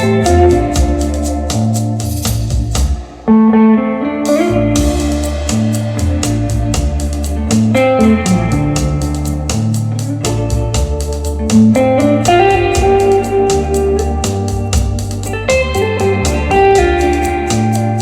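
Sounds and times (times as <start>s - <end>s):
steady drum beat: 0.0s - 3.3s, 4.3s - 18.0s
bass: 0.0s - 18.0s
guitar: 0.0s - 18.0s.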